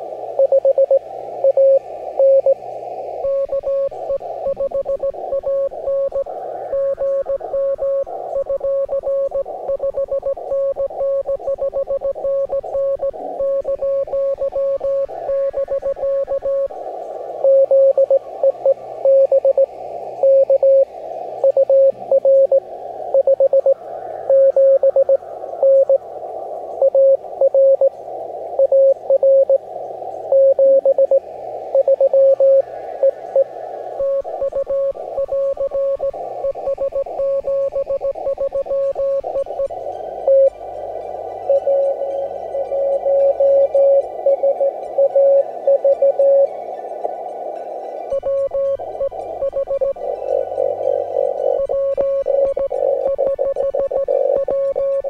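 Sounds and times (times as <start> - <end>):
faint background music: 0.0 - 55.0
radio band hiss: 0.0 - 55.0
morse code tone: 31.8 - 40.5, 41.4 - 46.5, 48.1 - 55.0.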